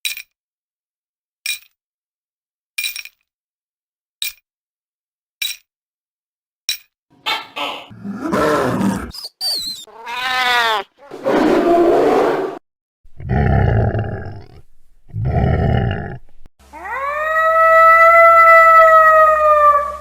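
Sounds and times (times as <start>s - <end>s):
wolf calls: 7.2s - 12.2s
wolf howling: 7.9s - 9.2s, 16.7s - 20.0s.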